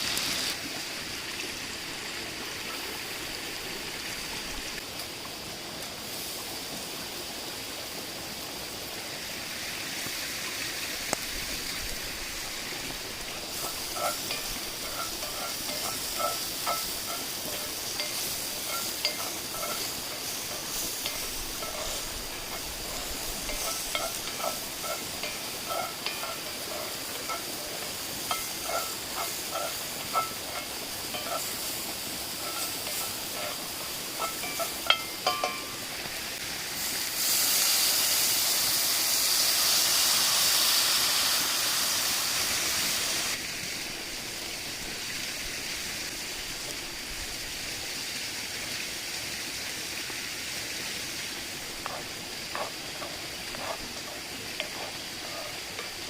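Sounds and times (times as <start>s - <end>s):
noodles sizzling in a pan: 0.0s - 56.0s
metal utensil clinking on pan: 13.5s - 35.9s.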